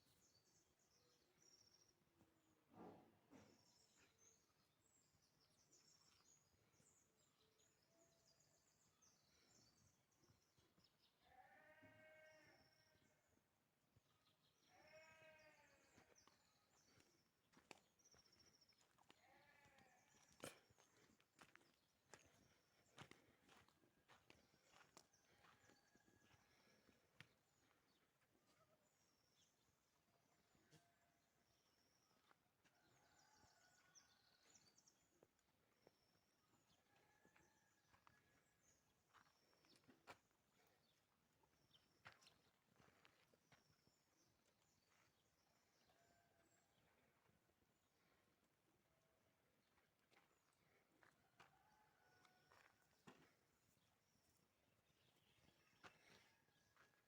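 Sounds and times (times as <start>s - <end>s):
faint animal bleating: 11.2s - 13.2s, 14.6s - 16.2s, 19.1s - 21.0s, 30.6s - 31.2s.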